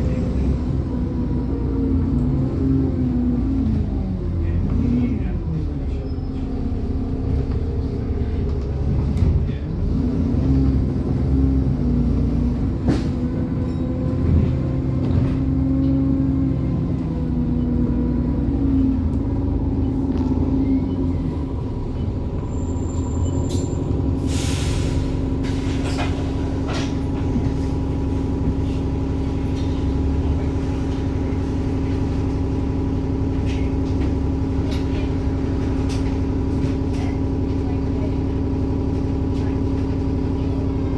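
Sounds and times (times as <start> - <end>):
bus diesel engine with turbo whine: 0.0 - 40.9
air brake hiss: 23.5 - 25.8.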